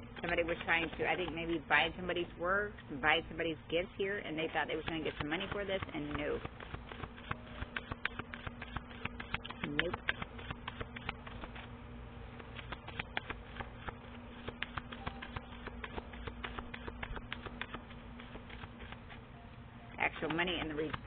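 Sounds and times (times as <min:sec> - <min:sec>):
low hum: 0:00.0 - 0:21.0
cards clicking and tapping: 0:04.7 - 0:11.7, 0:12.4 - 0:19.2, 0:20.0 - 0:21.0.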